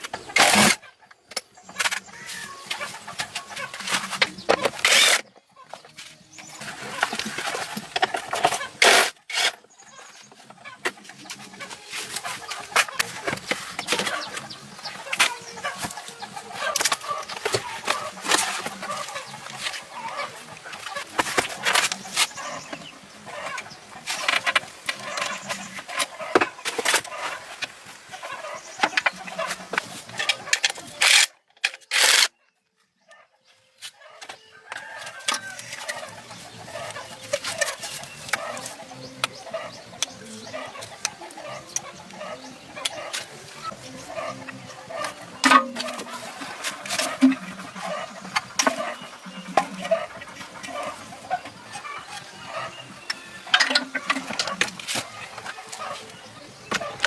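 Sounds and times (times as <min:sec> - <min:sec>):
busy background noise: 0:00.0 - 0:57.0.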